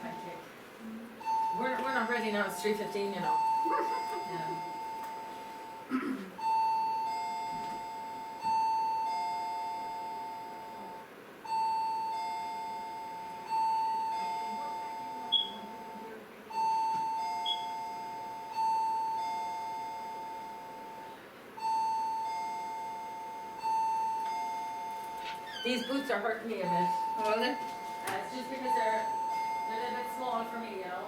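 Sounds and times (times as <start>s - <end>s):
two-tone electronic chime: 6.4s - 25.0s.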